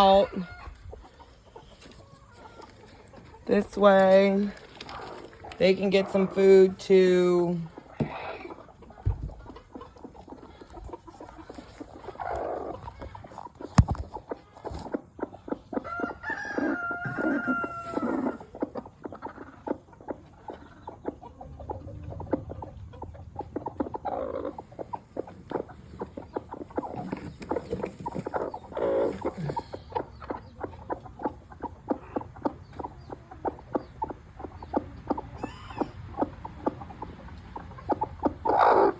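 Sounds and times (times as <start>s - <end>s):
chickens clucking: 0.0s - 38.9s
rooster crowing: 15.8s - 18.3s.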